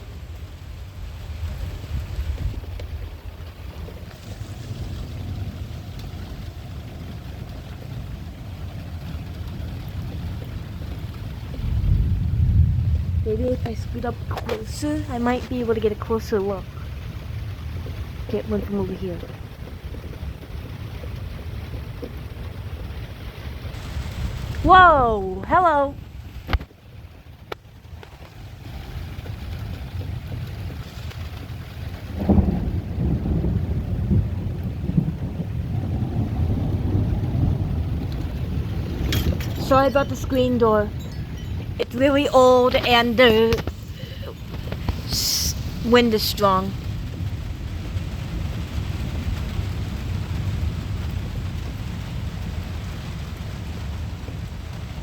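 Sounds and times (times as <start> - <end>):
deep thunder rumble: 0.0 - 55.0
steady rain: 0.0 - 55.0
storm wind gusting: 0.0 - 55.0
screen door rattling: 38.6 - 43.8.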